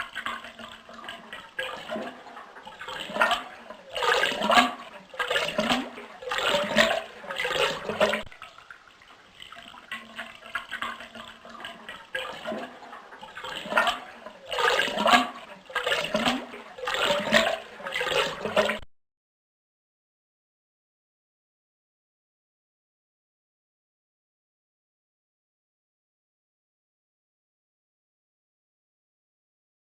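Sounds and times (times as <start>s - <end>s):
toilet flushing: 0.0s - 18.8s.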